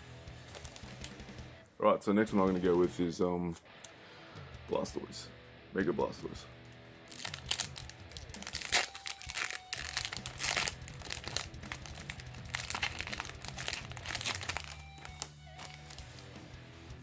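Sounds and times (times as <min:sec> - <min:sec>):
background music: 0:00.0 - 0:17.0
foil wrapper crinkling and tearing: 0:00.4 - 0:01.2, 0:07.1 - 0:16.3.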